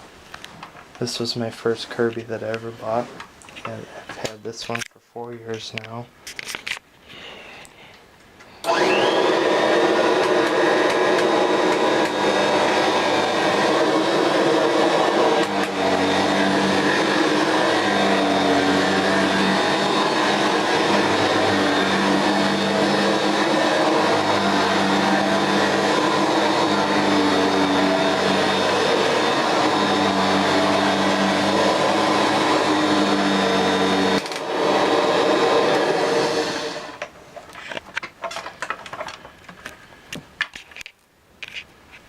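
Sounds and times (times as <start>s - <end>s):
vacuum cleaner running: 8.6s - 37.1s.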